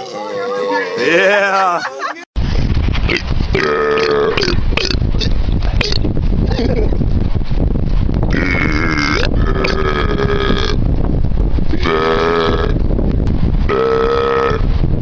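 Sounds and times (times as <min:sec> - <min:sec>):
man belching: 0:00.0 - 0:01.6, 0:03.1 - 0:06.9, 0:08.3 - 0:10.8, 0:11.7 - 0:12.8, 0:13.7 - 0:14.6.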